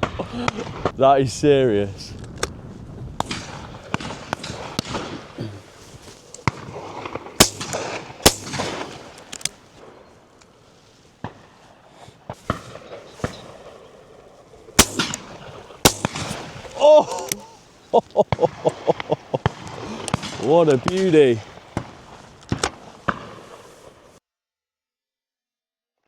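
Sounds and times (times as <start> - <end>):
shotguns firing: 3.2 - 5.4, 6.4 - 9.9, 14.8 - 17.6, 18.3 - 24.0.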